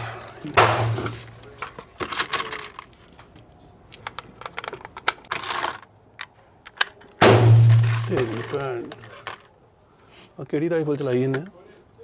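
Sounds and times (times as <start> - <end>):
firearm handling clicks and rattles: 1.4 - 7.2, 7.8 - 9.5
rifle shot ringing: 7.2 - 8.4.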